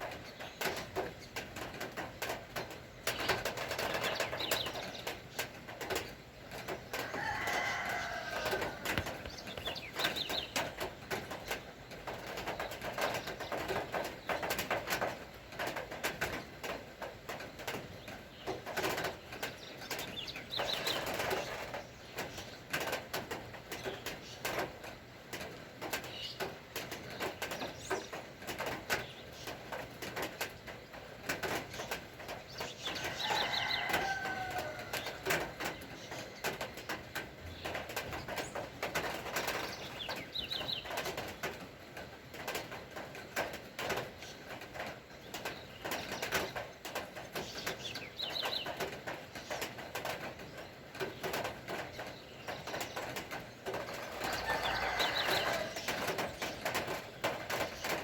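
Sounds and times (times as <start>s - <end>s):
steady rain patter: 0.0s - 58.0s
bird calling: 51.9s - 58.0s.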